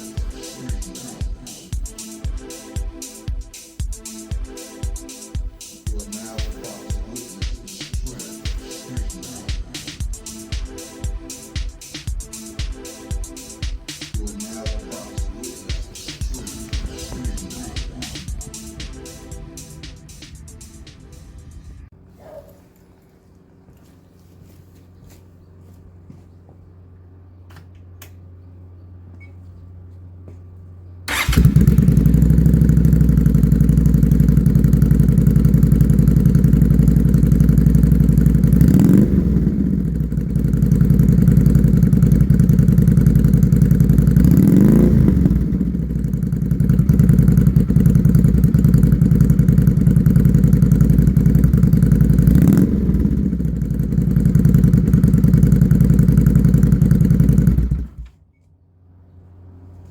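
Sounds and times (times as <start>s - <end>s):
motorcycle engine starting and idling: 9.7s - 21.9s, 31.0s - 58.5s
motorcycle throttle blips: 31.1s - 58.6s.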